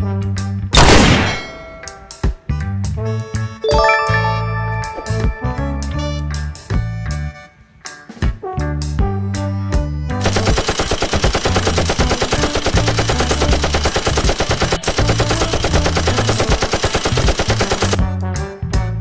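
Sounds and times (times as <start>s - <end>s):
rapid machine-gun fire: 0.8s - 1.4s, 10.2s - 18.0s
background music with bass line: 8.0s - 10.2s, 18.0s - 19.0s.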